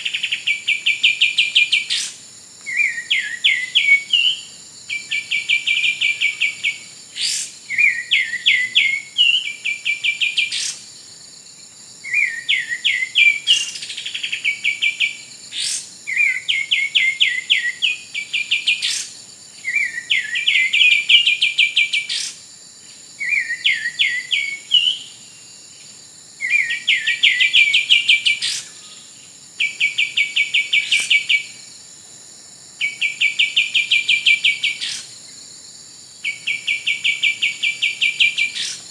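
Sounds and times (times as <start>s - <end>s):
rapid chattering bird calls: 36.3s - 38.9s.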